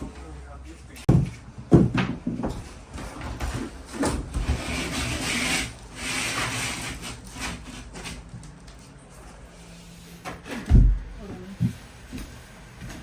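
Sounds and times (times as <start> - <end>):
scraping against drywall: 1.1 - 8.4.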